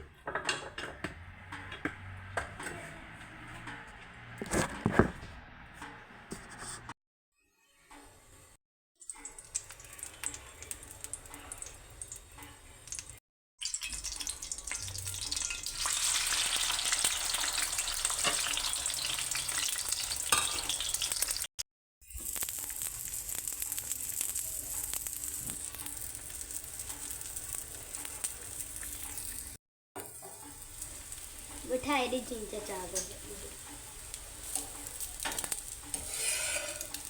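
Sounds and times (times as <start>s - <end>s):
food sizzling in a pan: 9.2s - 37.0s
spatula scraping a pan: 34.4s - 37.0s.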